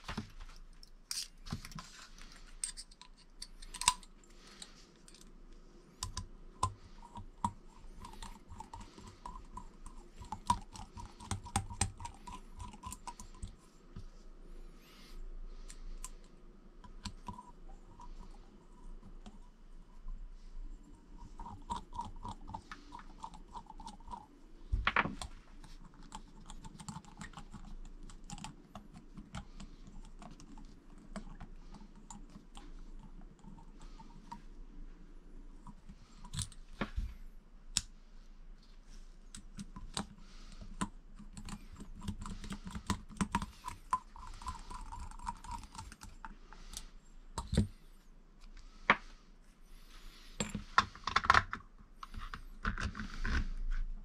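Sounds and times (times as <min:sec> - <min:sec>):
small parts clicking and tapping: 0:00.0 - 0:13.6, 0:50.4 - 0:53.4.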